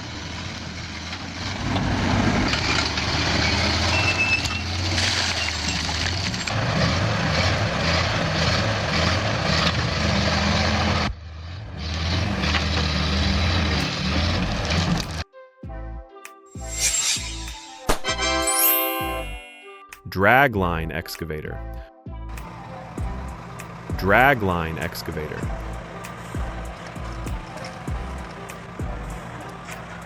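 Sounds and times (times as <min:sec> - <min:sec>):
excavator engine running: 0:22.3 - 0:30.0.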